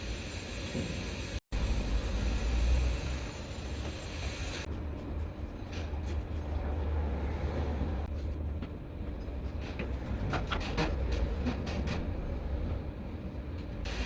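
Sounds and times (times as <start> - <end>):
sharp clicks and knocks: 8.6 - 12.2.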